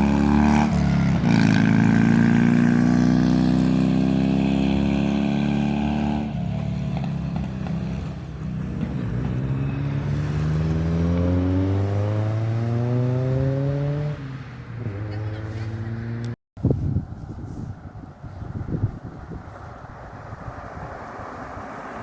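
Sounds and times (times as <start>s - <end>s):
car engine accelerating: 0.0s - 16.4s.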